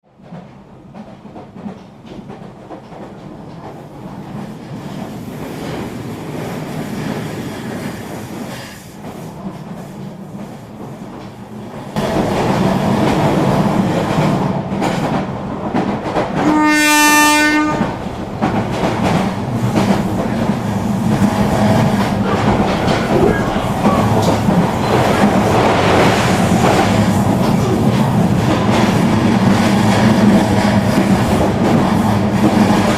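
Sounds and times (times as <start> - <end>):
train wheels on rail: 0.0 - 32.9
diesel locomotive engine hum: 4.0 - 32.9
wheels clattering over rail joints: 17.6 - 32.9.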